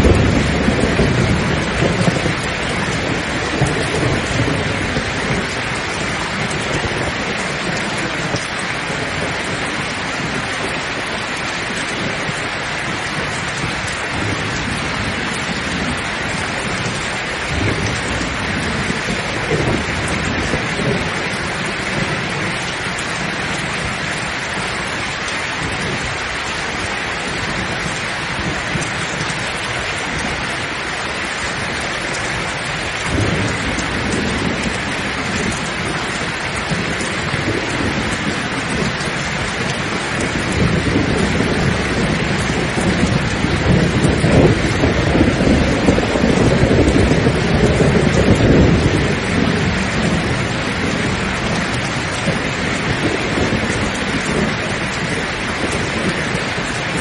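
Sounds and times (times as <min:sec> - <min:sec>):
heavy rain falling: 0:00.0 - 0:57.0
rolling thunder: 0:00.0 - 0:57.0.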